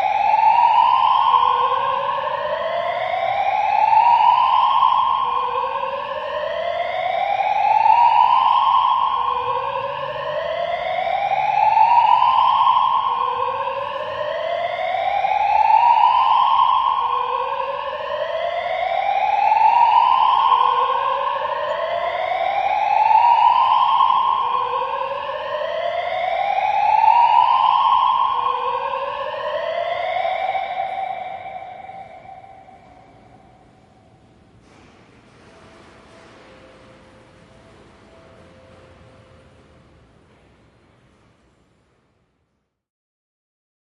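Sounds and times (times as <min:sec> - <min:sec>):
electronic siren rising in pitch: 0:00.0 - 0:33.9.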